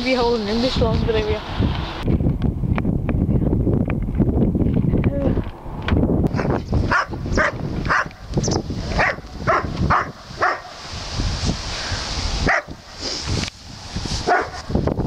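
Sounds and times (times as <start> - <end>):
dog barking: 6.9 - 8.2, 9.0 - 10.8, 12.4 - 12.8, 14.2 - 14.6.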